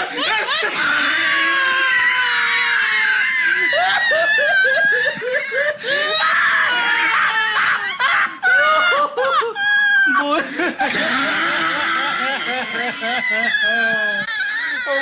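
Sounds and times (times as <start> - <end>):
man laughing shrilly: 0.0 - 1.4, 3.7 - 14.2.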